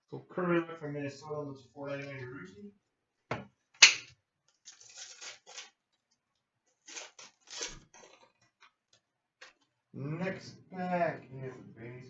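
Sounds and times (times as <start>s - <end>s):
cards rustling and scratching: 4.5s - 5.8s, 6.7s - 8.6s
wrapper tearing with crinkle: 4.5s - 6.1s, 6.7s - 8.7s.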